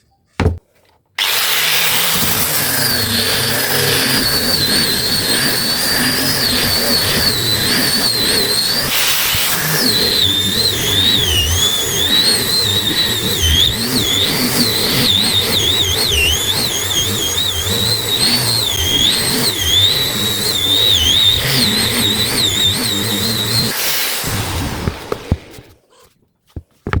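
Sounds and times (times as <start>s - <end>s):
power tool whining into wood: 1.2s - 25.7s.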